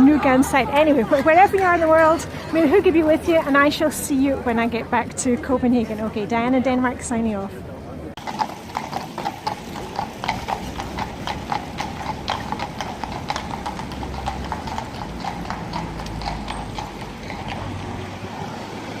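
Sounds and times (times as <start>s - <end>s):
horse hooves clip-clopping: 8.2s - 19.0s.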